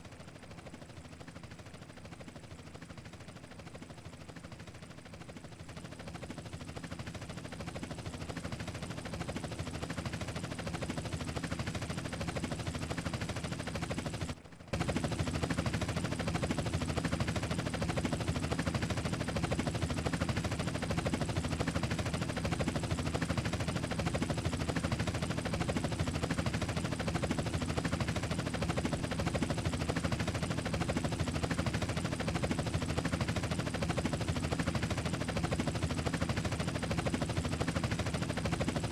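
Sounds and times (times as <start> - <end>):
helicopter rotor chopping: 0.0 - 38.9.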